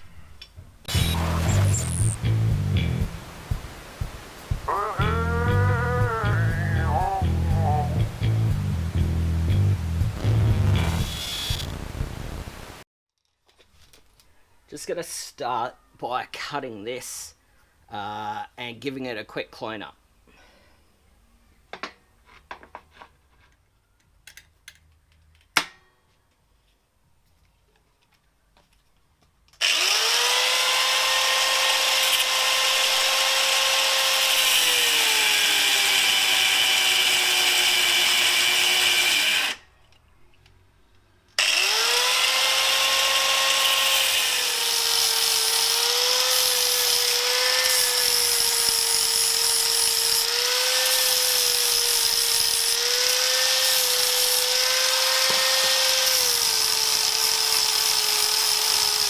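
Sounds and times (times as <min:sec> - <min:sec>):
electric grinder cutting metal: 0:00.9 - 0:02.4, 0:10.1 - 0:11.9, 0:29.6 - 0:39.6, 0:41.4 - 0:59.0.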